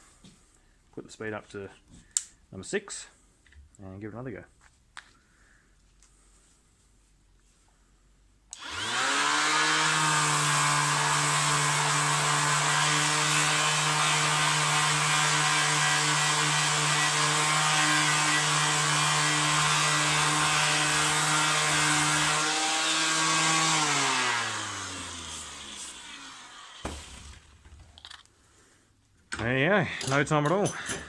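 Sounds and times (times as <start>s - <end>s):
orbital sander whining: 8.6s - 27.6s.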